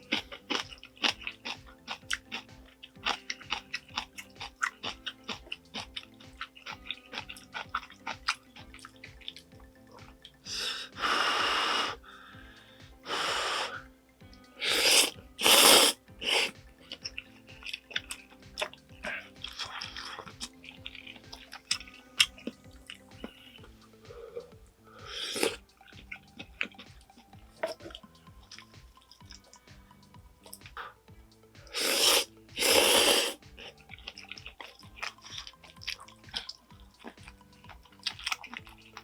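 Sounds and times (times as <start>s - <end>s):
wet chewing with clicks: 0.0s - 10.4s, 16.6s - 23.8s, 25.3s - 31.0s, 33.4s - 39.0s
slurping noodles and soup: 14.6s - 23.5s, 24.2s - 26.9s, 31.6s - 37.4s.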